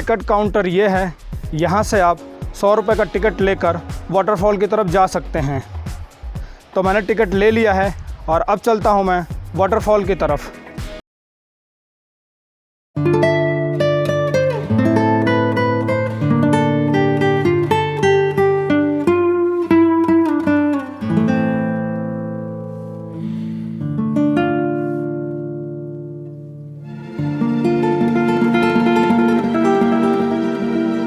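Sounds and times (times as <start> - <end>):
plucked acoustic guitar: 13.0 - 31.0.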